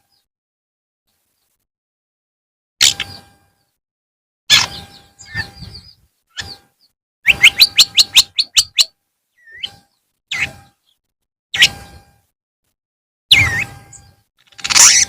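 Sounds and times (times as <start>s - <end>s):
bird calling in harsh chirps: 4.5s - 11.0s, 13.3s - 14.2s.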